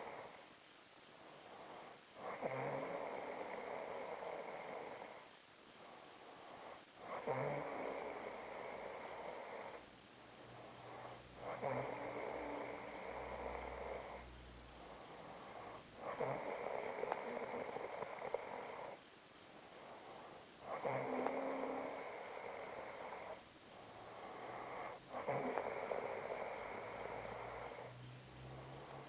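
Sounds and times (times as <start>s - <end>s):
woman snoring: 0.0s - 0.4s, 1.6s - 5.3s, 7.0s - 9.8s, 10.9s - 14.3s, 15.2s - 19.0s, 20.6s - 23.4s, 24.2s - 29.0s.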